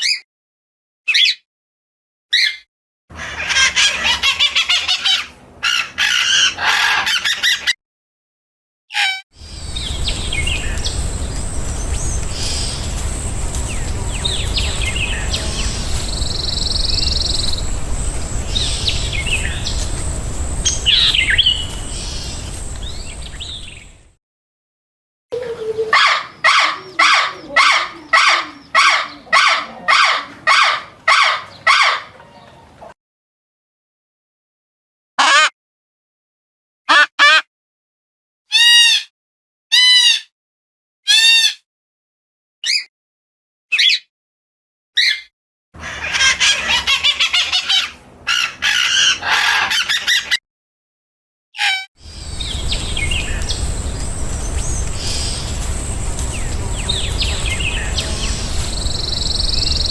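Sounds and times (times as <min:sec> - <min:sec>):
birds chirping: 0:03.2 - 0:07.7, 0:09.4 - 0:24.1, 0:25.4 - 0:32.9, 0:45.8 - 0:50.4, 0:52.0 - 0:59.9
steady hiss: 0:09.4 - 0:24.1, 0:52.0 - 0:59.9.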